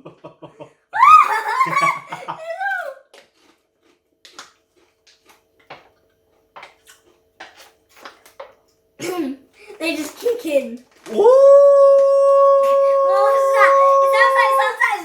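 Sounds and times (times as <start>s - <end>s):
wavering voice-like howl: 11.1s - 15.0s.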